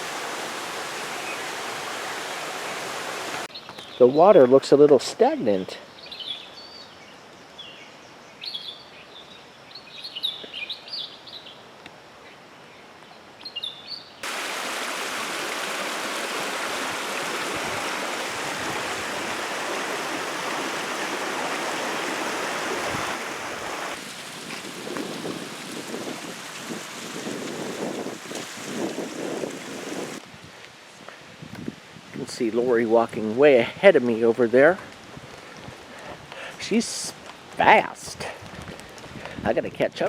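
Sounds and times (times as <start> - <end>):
birds chirping: 0.0 - 4.4, 13.4 - 24.0.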